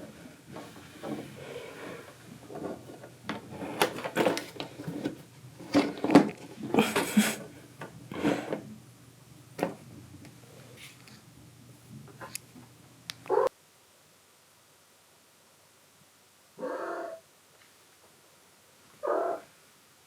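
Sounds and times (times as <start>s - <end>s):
kittens knocking and scraping: 0.5s - 8.7s.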